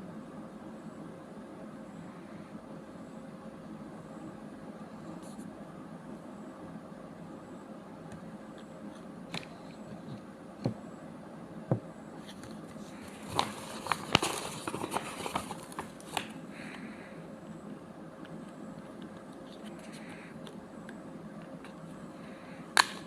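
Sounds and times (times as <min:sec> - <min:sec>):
clicks scrapes and rustling: 0:12.3 - 0:16.4.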